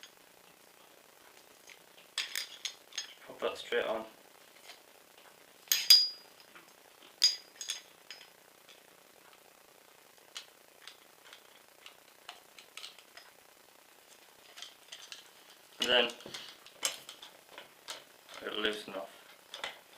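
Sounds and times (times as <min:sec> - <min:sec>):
screwdriver clinking against metal: 0:05.7 - 0:06.2, 0:07.2 - 0:08.3.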